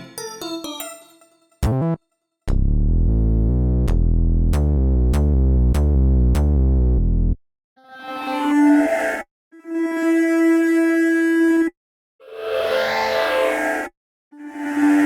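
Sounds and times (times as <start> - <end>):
deep bass synth sequence: 1.6 - 7.4.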